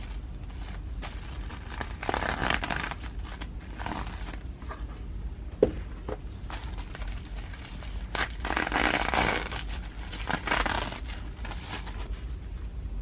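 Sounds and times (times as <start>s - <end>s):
rustling packaging: 0.0s - 4.5s, 6.4s - 12.3s.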